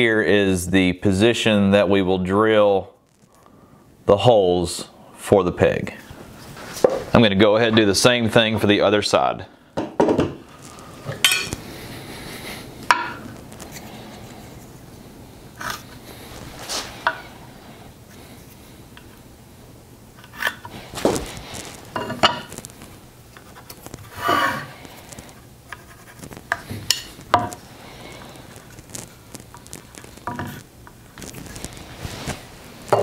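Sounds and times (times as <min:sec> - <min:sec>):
hand tools knocking on wood: 0:09.8 - 0:10.4.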